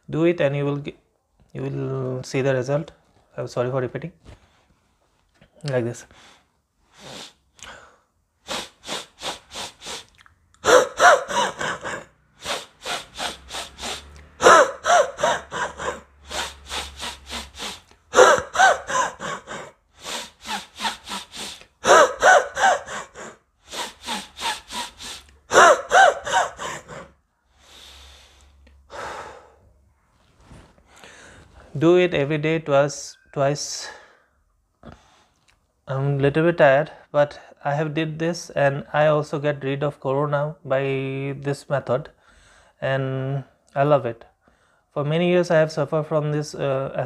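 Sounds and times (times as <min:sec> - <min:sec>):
soft breathing: 0:06.0 - 0:31.8
sharp sniffs through nose: 0:06.1 - 0:07.4, 0:08.4 - 0:19.4, 0:20.0 - 0:28.6
hard puffs out through mouth: 0:08.5 - 0:27.0.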